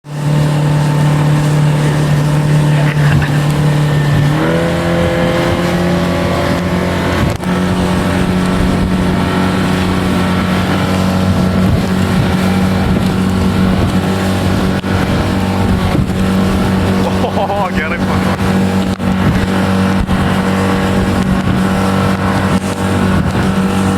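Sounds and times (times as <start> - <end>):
outboard engine running: 0.0 - 23.9
rushing water: 0.0 - 23.9
wind noise: 0.3 - 23.9.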